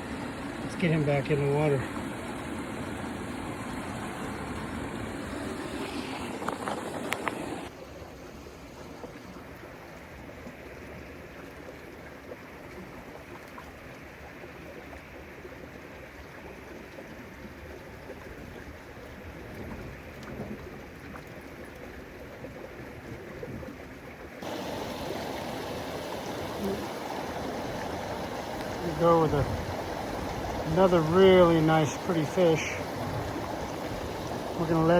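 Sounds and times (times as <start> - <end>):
stream running over rocks: 0.0 - 34.9.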